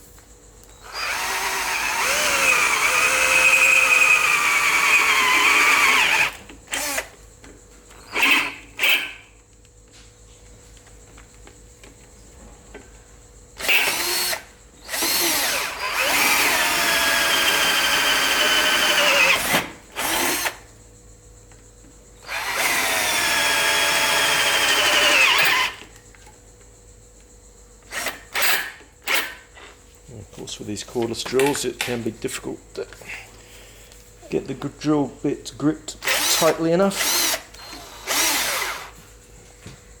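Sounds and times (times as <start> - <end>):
cordless drill whining: 0.8 - 7.2, 8.0 - 9.2, 13.6 - 20.6, 22.2 - 25.8, 27.9 - 29.4, 36.0 - 39.0.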